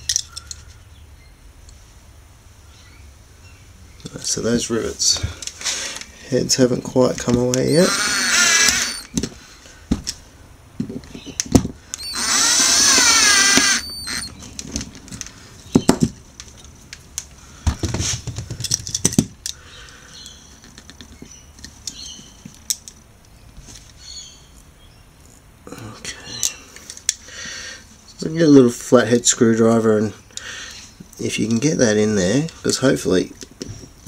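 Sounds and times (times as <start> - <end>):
small power drill grinding metal: 7.6 - 9.1, 11.9 - 14.3.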